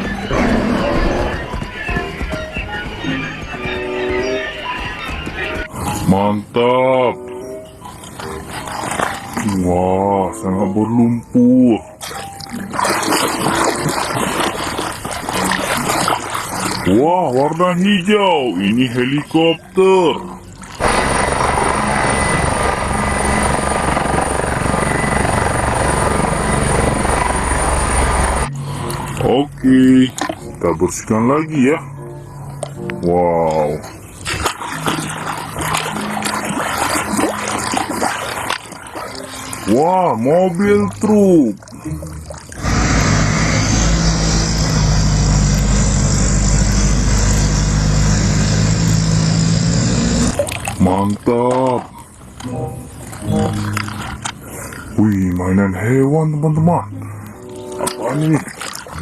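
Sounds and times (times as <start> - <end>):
helicopter rotor whirr and chop: 20.8 - 28.5, 42.6 - 50.4.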